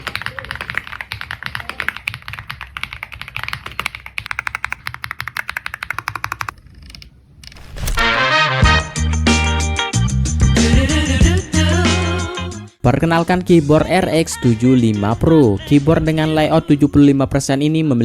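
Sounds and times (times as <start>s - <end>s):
rapid typing on mechanical keyboard: 0.0s - 6.6s.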